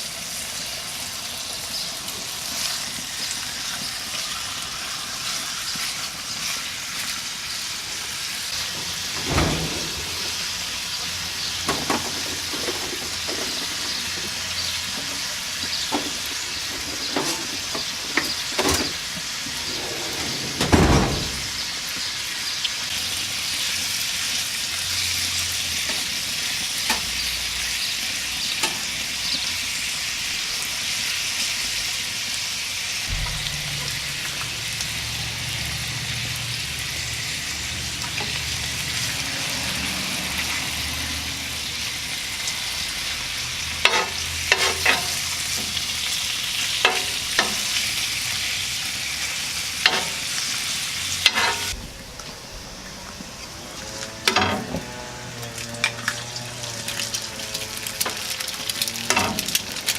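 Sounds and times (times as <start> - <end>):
food sizzling in butter: 0.0 - 8.6, 10.2 - 19.8, 34.5 - 51.8, 55.4 - 59.9.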